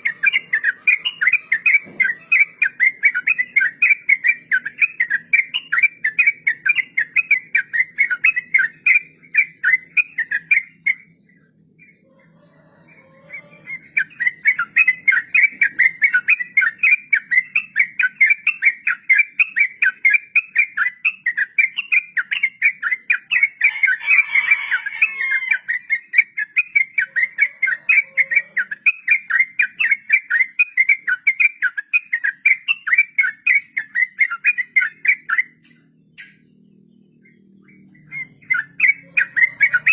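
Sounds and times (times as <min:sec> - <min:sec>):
bird singing whistled notes: 0:00.0 - 0:12.0, 0:13.0 - 0:39.9.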